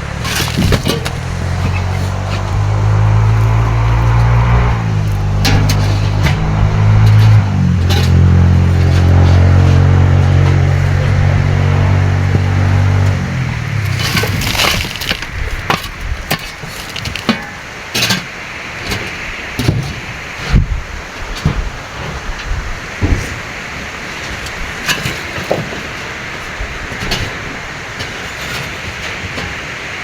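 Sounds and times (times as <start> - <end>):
knocks and clatter: 0.0 - 18.3
engine running: 0.0 - 19.5.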